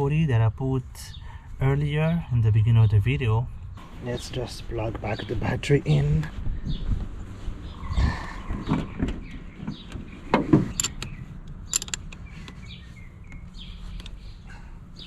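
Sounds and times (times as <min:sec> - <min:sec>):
birds chirping faintly: 0:00.0 - 0:15.0
tools clicking and knocking: 0:10.4 - 0:12.2.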